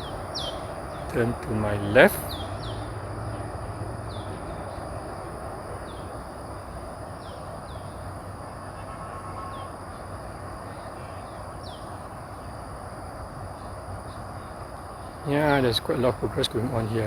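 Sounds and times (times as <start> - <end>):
bird chirping: 0.0 - 4.9, 7.2 - 8.1, 10.7 - 12.5
constant high whine: 0.0 - 17.0
distant traffic rumble: 0.0 - 17.0.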